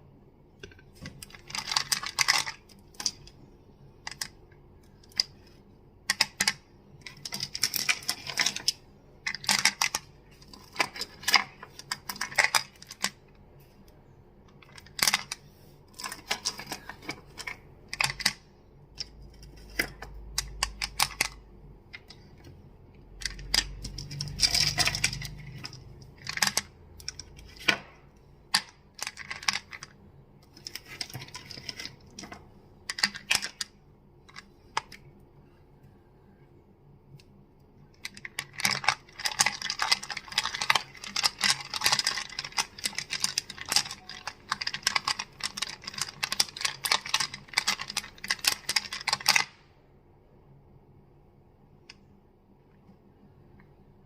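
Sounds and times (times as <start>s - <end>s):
crystals clicking together: 23.2s - 27.4s.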